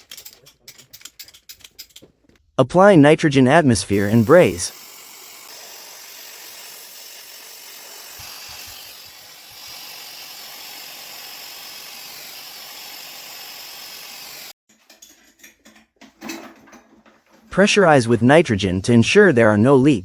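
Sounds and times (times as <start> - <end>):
torch flame hissing: 3.9 - 9.9.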